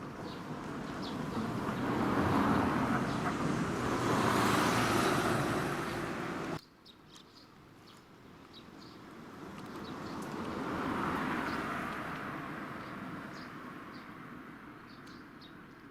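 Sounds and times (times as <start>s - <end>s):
road vehicle passing by: 0.0s - 6.6s, 9.0s - 14.6s.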